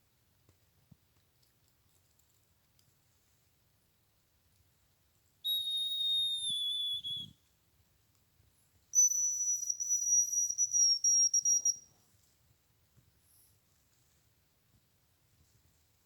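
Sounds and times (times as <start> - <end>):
high thin whistles: 5.4 - 7.4, 9.0 - 12.0.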